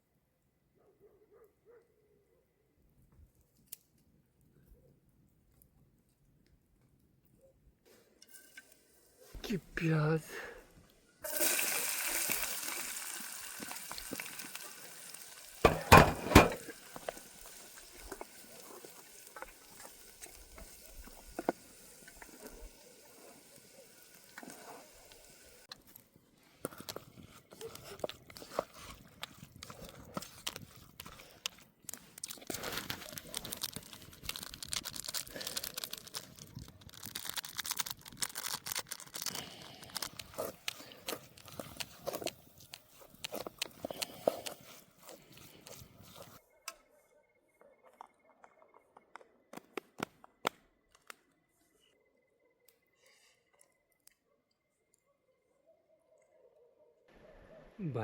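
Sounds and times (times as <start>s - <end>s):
scraping and stirring in a pot: 7.9s - 9.3s, 11.2s - 46.4s
utensil knocking on pot: 15.7s - 16.6s.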